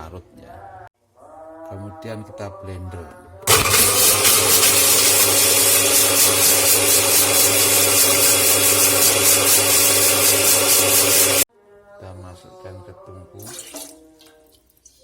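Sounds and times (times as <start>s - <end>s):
electric blender running: 3.5s - 11.4s.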